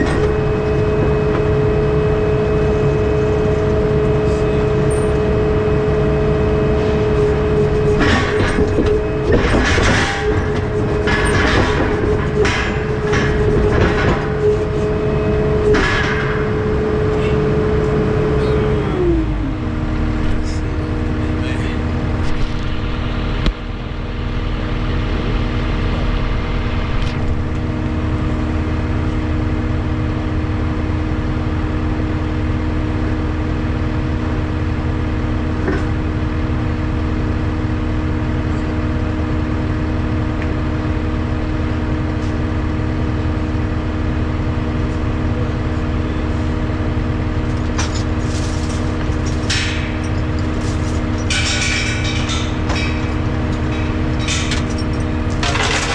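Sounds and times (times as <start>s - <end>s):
diesel truck engine droning: 0.0s - 55.9s.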